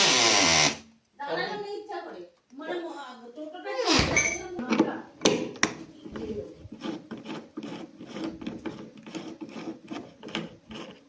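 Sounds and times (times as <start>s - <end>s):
rubbing and scraping on refrigerator door: 5.8s - 11.0s.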